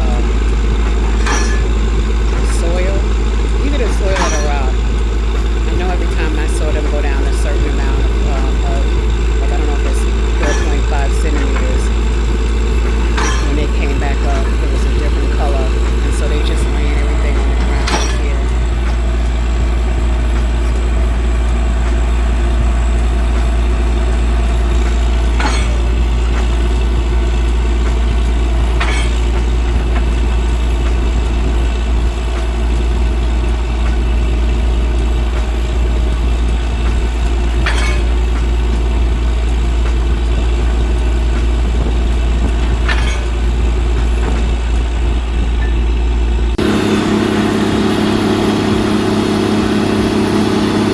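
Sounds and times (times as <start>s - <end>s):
heavy engine running: 0.0s - 50.9s.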